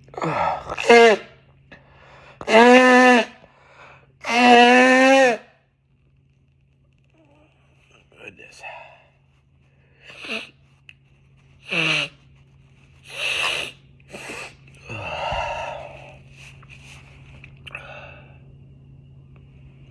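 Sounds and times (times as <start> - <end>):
person blowing nose: 0.6 - 1.3, 2.4 - 3.4, 4.2 - 5.5, 10.0 - 10.6, 11.6 - 12.3, 13.0 - 14.6.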